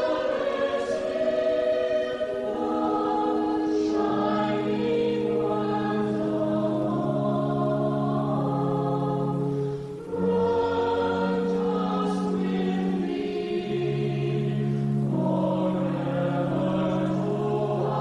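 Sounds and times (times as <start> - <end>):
church choir singing: 0.0 - 18.0.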